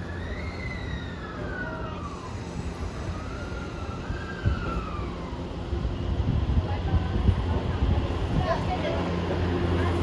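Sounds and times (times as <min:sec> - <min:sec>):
electric train inverter whining: 0:00.0 - 0:06.6
low rumble of moving train: 0:00.0 - 0:10.0.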